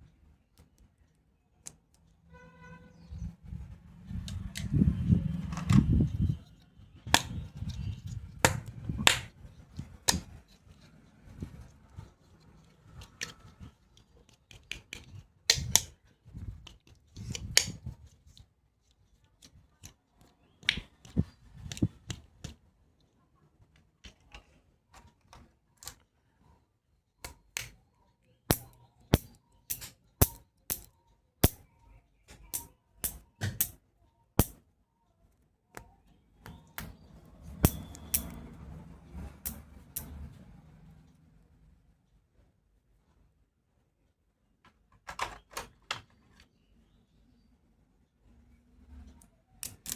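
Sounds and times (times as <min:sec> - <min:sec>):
plastic toy clicks and taps: 0:07.1 - 0:10.4, 0:14.3 - 0:17.9, 0:28.5 - 0:31.7, 0:32.3 - 0:33.8, 0:34.4 - 0:34.6.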